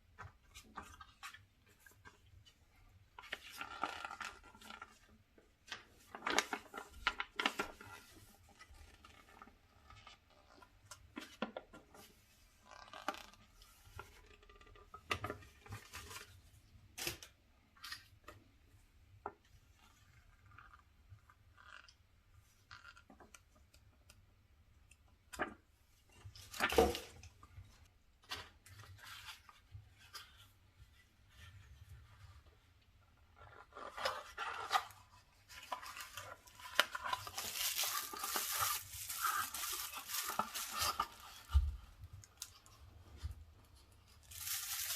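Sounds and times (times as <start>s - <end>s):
packaging rustling and tearing: 33.8s - 42.7s, 44.2s - 44.9s.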